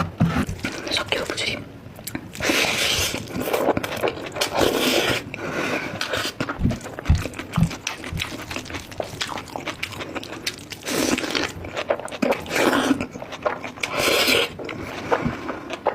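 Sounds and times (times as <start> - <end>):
wet chewing: 6.0 - 15.9.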